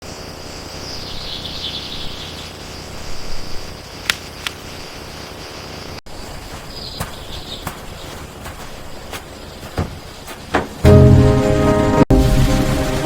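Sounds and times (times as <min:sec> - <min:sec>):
sharp clicks: 0:04.0 - 0:04.6.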